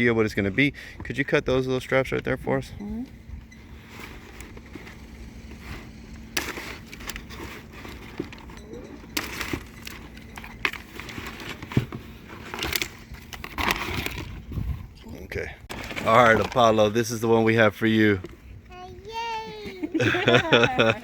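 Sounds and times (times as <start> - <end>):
steady low hum: 0.0 - 18.7
packaging rustling and crackling: 3.6 - 14.5, 15.7 - 17.0.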